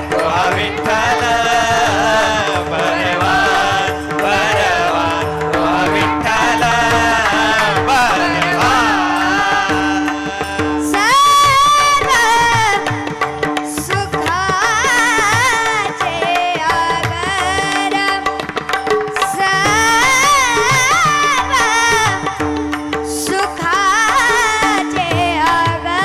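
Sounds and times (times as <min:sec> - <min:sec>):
ornamented wavering vocal: 0:00.0 - 0:11.1
tabla strokes: 0:00.0 - 0:26.0.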